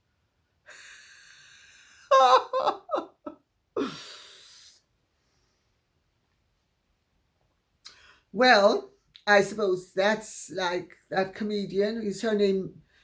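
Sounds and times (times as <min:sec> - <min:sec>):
woman laughing: 0:01.6 - 0:04.1
woman breathing in: 0:03.8 - 0:05.7.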